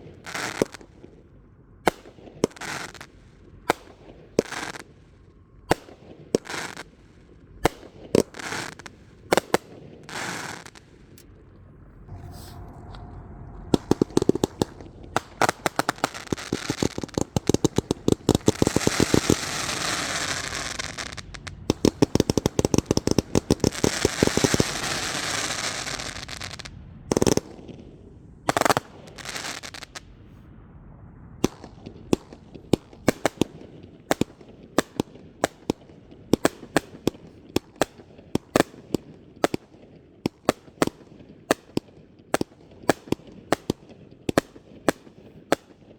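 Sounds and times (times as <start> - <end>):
fireworks crackling pops: 0.0 - 13.1, 13.7 - 30.5, 31.4 - 45.9
fireworks bangs: 0.0 - 45.9
fireworks rushing hiss: 8.2 - 11.3, 12.1 - 27.6, 28.4 - 30.0.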